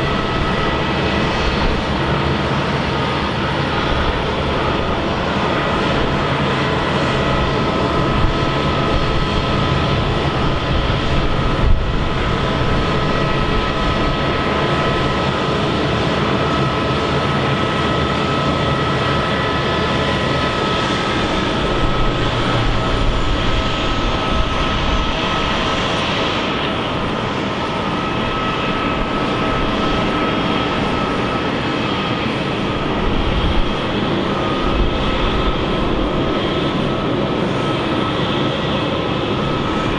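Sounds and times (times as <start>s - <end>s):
jet engines rushing with whine: 0.0s - 39.9s.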